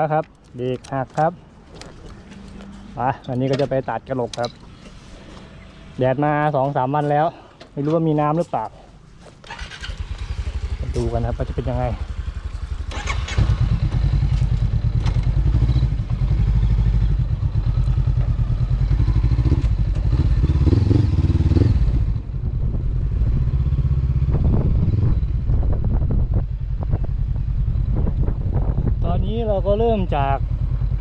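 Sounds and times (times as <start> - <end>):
motorcycle engine running: 9.5 - 31.0.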